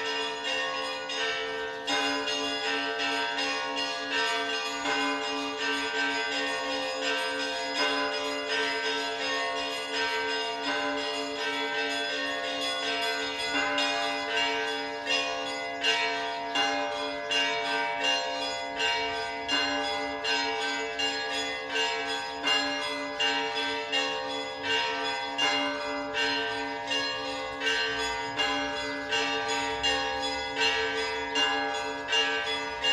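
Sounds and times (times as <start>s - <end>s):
small church bells ringing: 0.0s - 32.9s.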